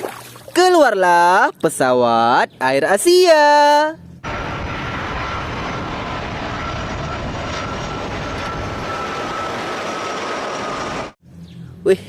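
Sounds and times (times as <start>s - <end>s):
airliner engines rushing and whining: 4.0s - 11.2s.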